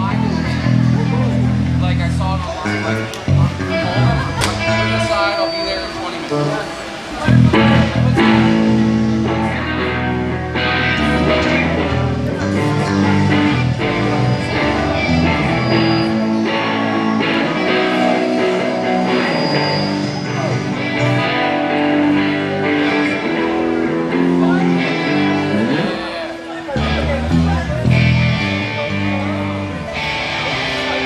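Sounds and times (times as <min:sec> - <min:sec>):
deep bass line: 0:00.0 - 0:05.2, 0:07.2 - 0:19.2, 0:26.8 - 0:31.0
amplified electric guitar: 0:00.0 - 0:31.0.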